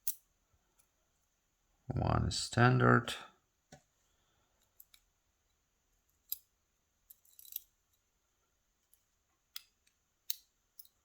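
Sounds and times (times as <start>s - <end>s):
small metal pins clicking: 0.0s - 0.2s, 7.1s - 7.7s.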